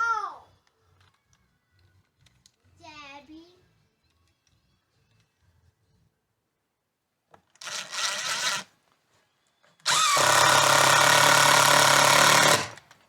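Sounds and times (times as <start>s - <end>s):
power drill driving screw: 7.6s - 8.7s, 9.8s - 12.9s.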